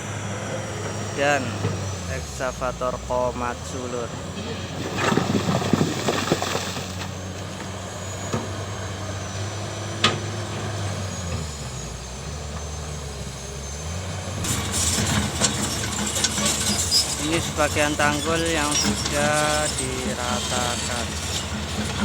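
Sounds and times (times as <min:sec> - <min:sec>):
excavator diesel engine running: 0:00.0 - 0:22.0
loud noisy sound: 0:17.0 - 0:21.3.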